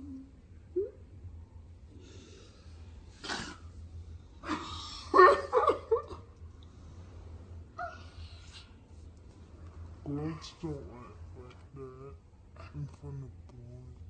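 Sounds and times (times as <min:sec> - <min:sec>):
girl laughing: 0:04.4 - 0:06.3.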